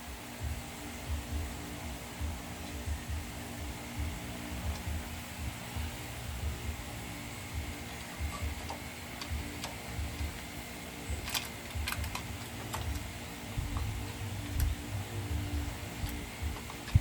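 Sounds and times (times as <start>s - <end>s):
faint steady hum: 0.0s - 17.0s
small parts clicking: 11.2s - 14.8s, 15.6s - 17.0s.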